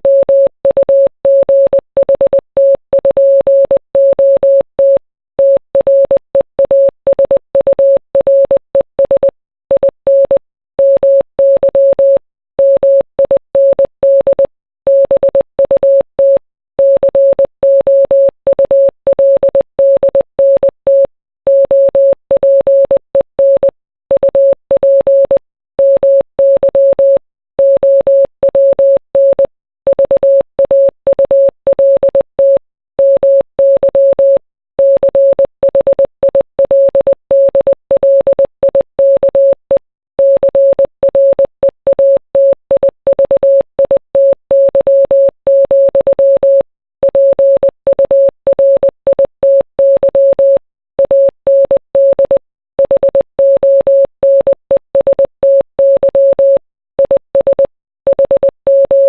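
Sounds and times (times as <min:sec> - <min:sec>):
morse code beeps: 0:00.0 - 0:59.0.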